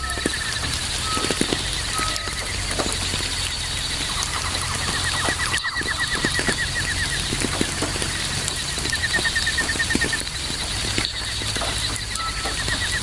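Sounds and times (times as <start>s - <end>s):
creature chirping: 0.0s - 13.0s
drops ticking: 0.0s - 13.0s
faint continuous trill: 0.0s - 13.0s
steady night rain: 0.0s - 13.0s.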